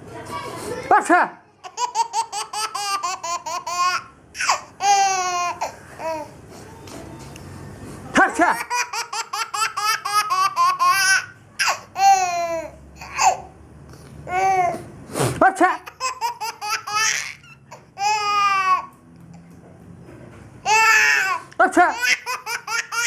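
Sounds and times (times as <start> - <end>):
baby laughing: 1.6 - 6.4, 8.4 - 13.5, 15.8 - 18.9, 20.6 - 23.0.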